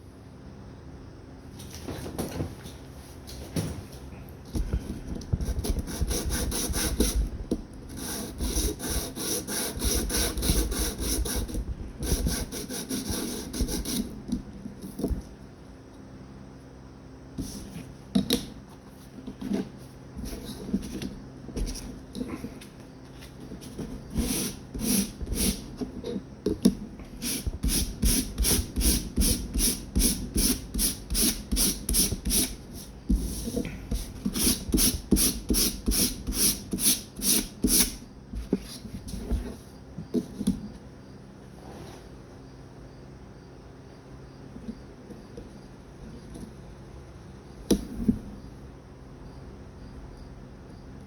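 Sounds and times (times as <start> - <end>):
sanding on coarse sandpaper: 5.6 - 7.2, 8.0 - 14.1.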